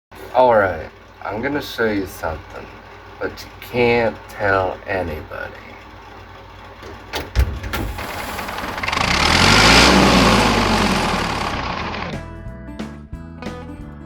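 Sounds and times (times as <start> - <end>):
vehicle engine driving past: 7.7 - 12.2.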